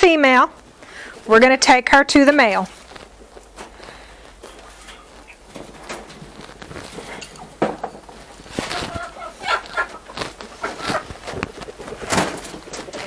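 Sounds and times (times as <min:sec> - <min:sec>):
chickens clucking: 0:03.0 - 0:13.0.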